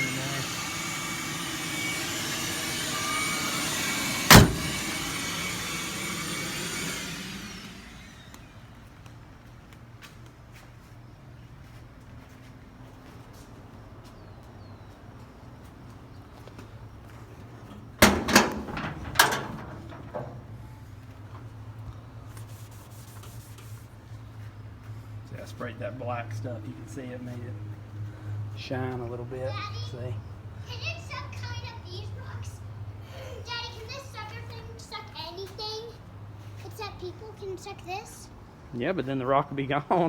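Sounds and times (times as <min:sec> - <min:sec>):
vacuum cleaner running: 0:00.0 - 0:08.8, 0:17.1 - 0:21.2
door shutting with knocks: 0:01.4 - 0:05.7, 0:17.8 - 0:20.6
loud sharp thump: 0:01.5 - 0:06.2.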